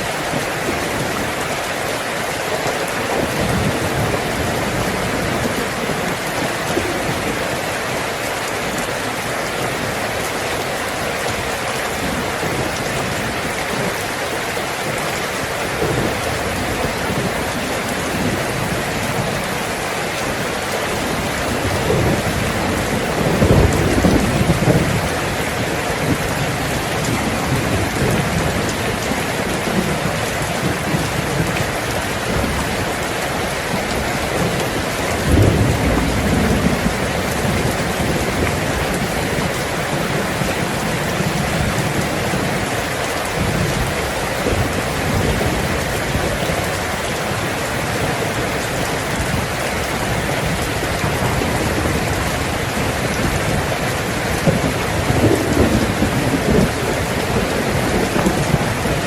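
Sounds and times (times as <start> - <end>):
heavy rain on a tin roof: 0.0 - 59.0
thunder rumbling: 2.6 - 59.0.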